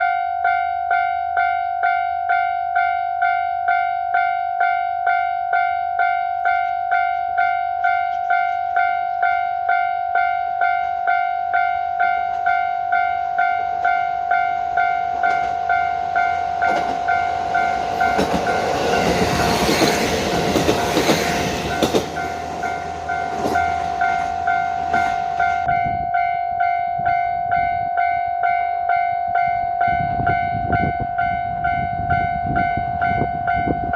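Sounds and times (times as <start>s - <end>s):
diesel railcar engine and wheels: 0.0s - 33.9s
level crossing alarm bell ringing: 0.0s - 33.9s
wheels clacking over rail joints: 13.3s - 25.7s.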